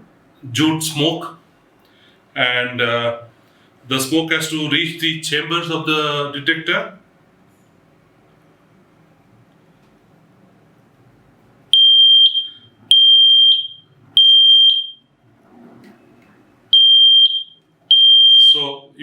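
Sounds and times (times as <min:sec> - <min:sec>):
smoke detector beeping: 0:11.7 - 0:15.0, 0:16.7 - 0:18.9.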